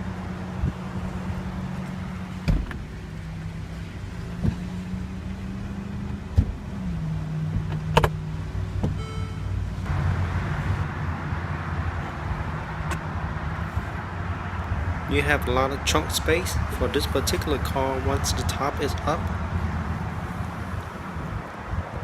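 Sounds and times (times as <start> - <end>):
short electronic beep: 9.0 - 9.6.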